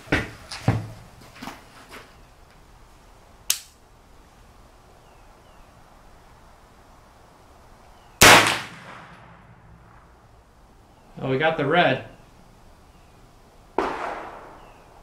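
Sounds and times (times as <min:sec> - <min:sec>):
rifle gunshot with ringing echo: 0:08.2 - 0:10.0, 0:13.8 - 0:14.9
faint sharp crack: 0:13.8 - 0:14.9.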